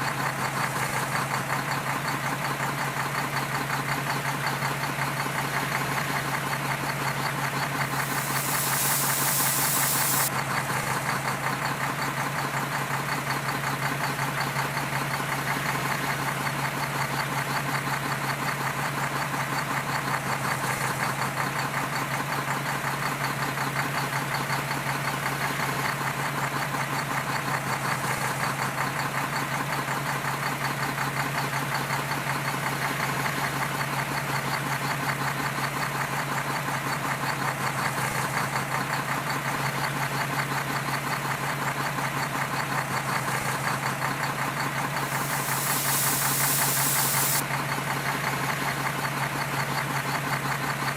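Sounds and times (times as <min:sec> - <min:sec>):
diesel engine knocking clatter: 0:00.0 - 0:46.7, 0:47.4 - 0:50.9
loud hiss: 0:07.8 - 0:10.3, 0:45.0 - 0:47.4.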